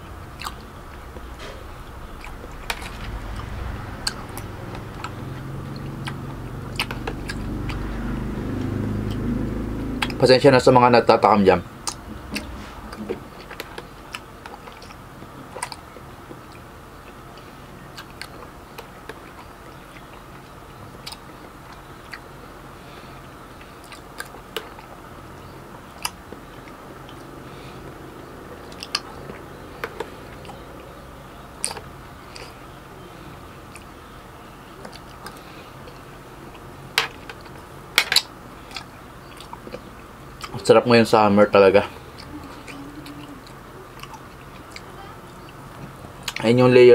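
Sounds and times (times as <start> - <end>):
low background hum: 0.0 - 46.9
person chewing food: 42.0 - 46.4.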